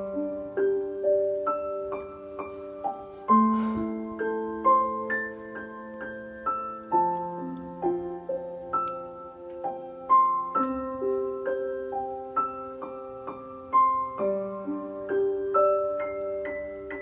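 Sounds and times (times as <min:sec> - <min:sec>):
slow piano melody: 0:00.0 - 0:17.0.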